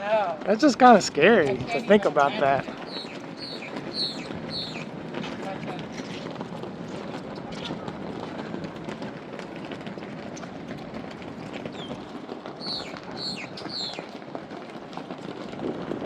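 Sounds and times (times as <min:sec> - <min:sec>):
footsteps: 0:00.0 - 0:16.0
outdoor wind: 0:00.0 - 0:16.0
bird chirping: 0:02.8 - 0:04.9, 0:11.7 - 0:12.0, 0:12.6 - 0:14.1.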